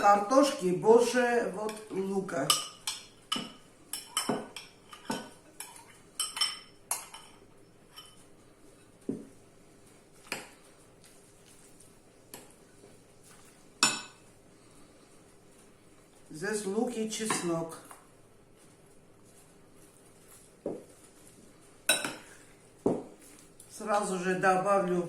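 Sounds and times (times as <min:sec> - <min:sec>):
cutlery clinking against dishes: 0:02.5 - 0:08.3, 0:21.9 - 0:22.4.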